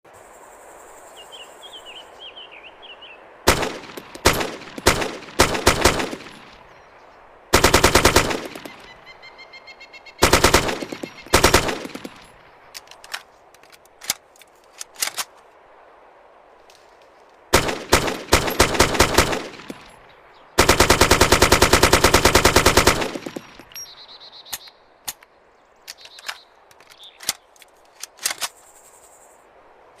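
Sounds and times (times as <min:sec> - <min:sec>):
gun firing shots and bursts: 0:03.5 - 0:06.7, 0:07.5 - 0:09.1, 0:10.2 - 0:15.3, 0:17.5 - 0:20.0, 0:20.6 - 0:23.8
quiet scattered clicks: 0:03.5 - 0:06.8, 0:07.6 - 0:09.0, 0:10.2 - 0:15.6, 0:16.6 - 0:23.9, 0:24.5 - 0:29.2.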